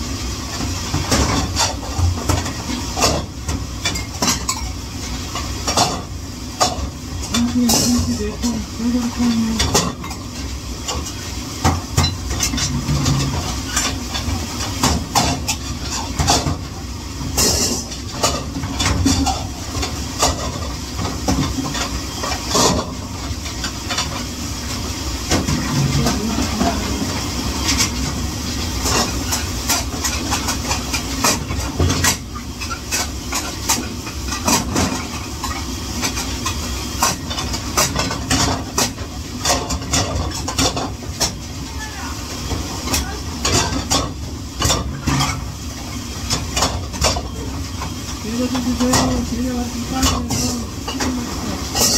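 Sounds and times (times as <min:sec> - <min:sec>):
dishes and cutlery clattering: 0:01.0 - 0:08.4, 0:11.7 - 0:16.7, 0:17.4 - 0:23.0, 0:28.8 - 0:41.4, 0:42.9 - 0:45.4.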